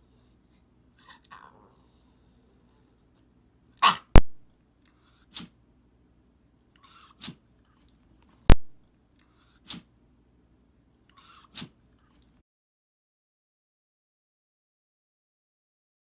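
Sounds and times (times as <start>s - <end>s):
dog sneezing: 3.8s - 4.2s, 5.3s - 5.6s, 6.8s - 7.4s, 9.6s - 9.9s, 11.2s - 11.8s.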